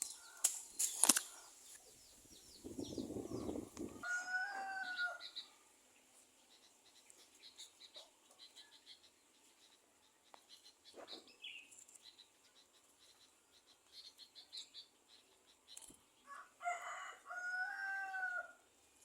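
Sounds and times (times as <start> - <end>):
rooster crowing: 3.9 - 5.3, 16.3 - 18.6.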